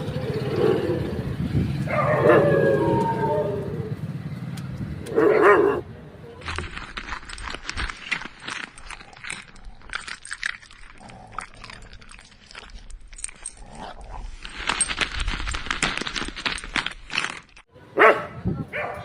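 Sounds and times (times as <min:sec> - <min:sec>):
dogs barking: 0:00.0 - 0:04.0, 0:05.0 - 0:05.9, 0:18.0 - 0:19.0
loud close dog bark: 0:01.9 - 0:03.6, 0:05.1 - 0:05.9, 0:18.0 - 0:19.0.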